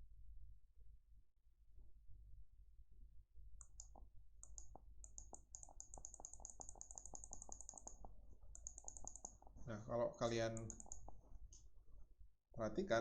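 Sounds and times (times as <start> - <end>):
computer mouse button clicking: 3.6 - 9.6, 10.5 - 11.2.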